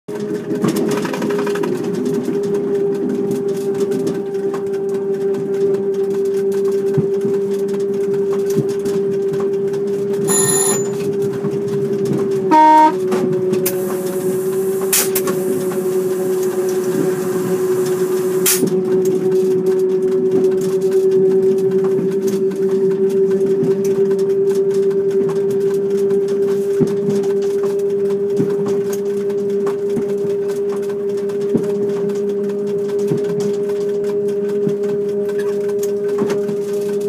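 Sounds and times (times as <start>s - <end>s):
train horn toot: 10.3s - 11.0s, 12.4s - 18.6s
electric train motor whine: 10.3s - 11.2s, 12.3s - 18.8s.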